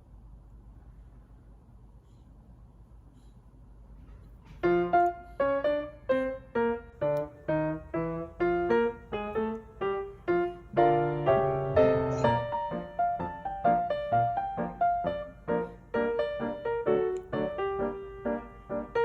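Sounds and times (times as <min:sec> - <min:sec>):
faint low hum: 0:00.0 - 0:19.0
keyboard tune of repeating notes: 0:10.8 - 0:14.9.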